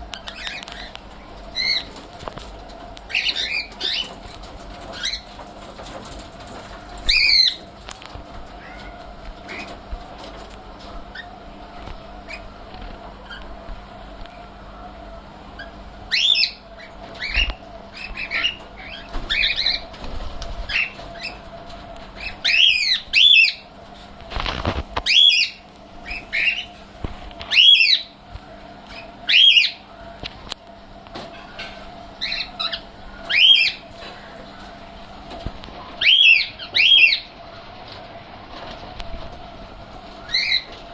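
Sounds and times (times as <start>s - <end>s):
steady hum: 0.0s - 40.9s
bird chirping: 15.6s - 19.9s, 22.2s - 23.7s, 32.2s - 33.9s, 36.0s - 37.4s.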